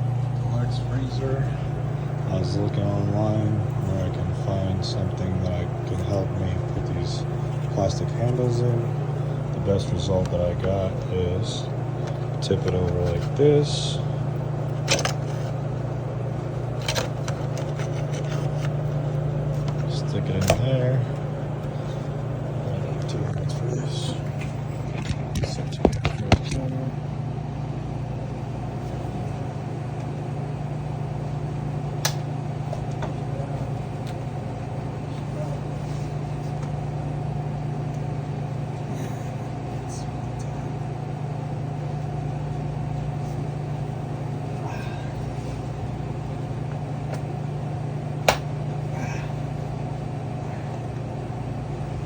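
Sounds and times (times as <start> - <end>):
low machine hum: 0.0 - 52.0.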